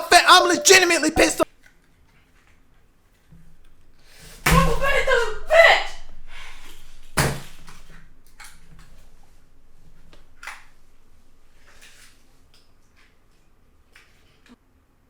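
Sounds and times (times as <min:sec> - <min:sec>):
sharp knock: 0:04.1 - 0:09.4.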